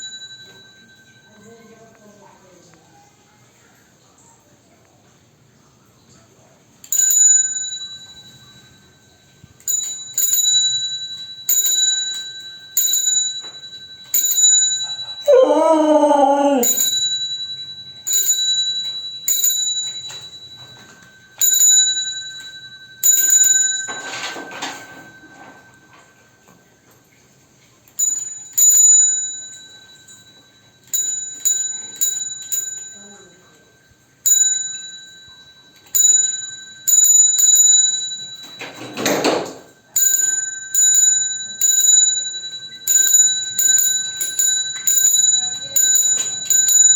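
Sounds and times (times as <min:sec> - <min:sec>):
bicycle bell dinging: 0:00.0 - 0:02.0, 0:06.9 - 0:15.3, 0:16.4 - 0:26.4, 0:28.0 - 0:46.9
dog howling: 0:15.1 - 0:16.9.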